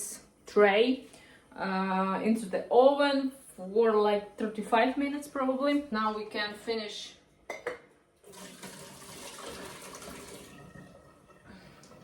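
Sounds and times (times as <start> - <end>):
water running into sink: 8.2 - 12.0.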